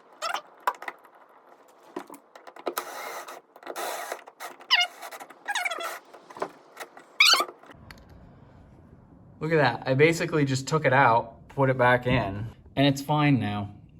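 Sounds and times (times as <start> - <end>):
squeaks and creaks: 0.0 - 7.8.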